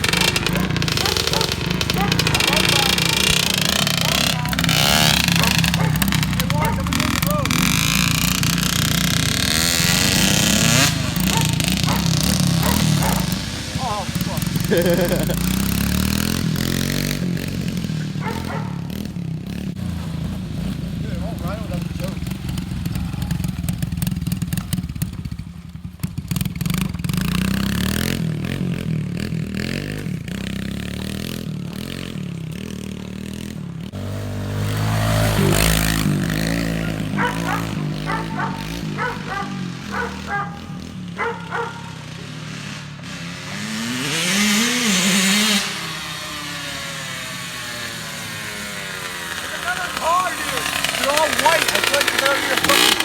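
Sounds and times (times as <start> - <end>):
off-road engine revving: 0.0 - 53.0
dog barking: 0.2 - 3.3, 4.0 - 7.1, 10.6 - 14.4, 18.2 - 19.0, 36.6 - 42.1.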